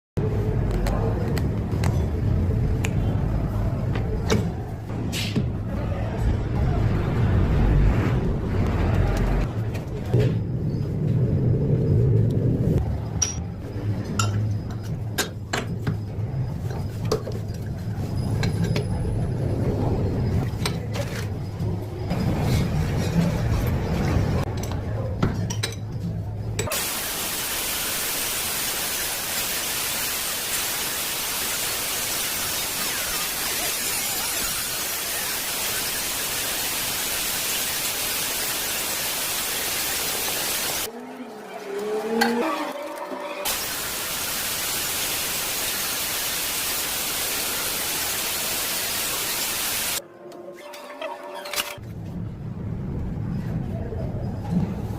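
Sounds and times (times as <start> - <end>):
steady static hiss: 26.7 - 40.9, 43.5 - 50.0.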